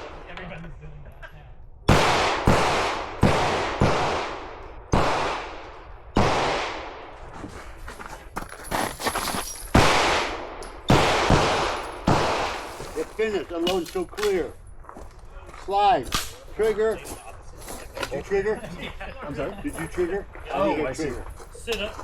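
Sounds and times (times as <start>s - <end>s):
pistol shots echoing: 1.9s - 7.2s, 9.7s - 12.8s.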